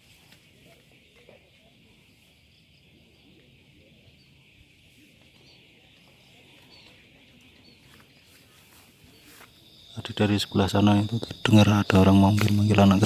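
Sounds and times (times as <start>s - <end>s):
insects buzzing: 0.0s - 13.0s.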